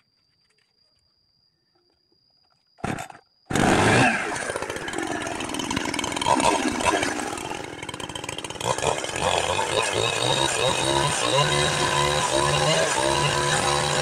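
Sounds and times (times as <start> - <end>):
chainsaw cutting a log: 2.8 - 14.0.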